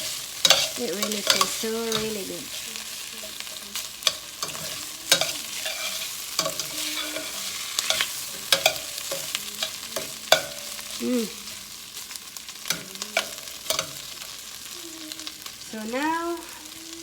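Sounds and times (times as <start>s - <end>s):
utensil scraping and clinking on pan: 0.0s - 11.0s, 12.6s - 14.4s
food sizzling in a frying pan: 0.0s - 17.0s.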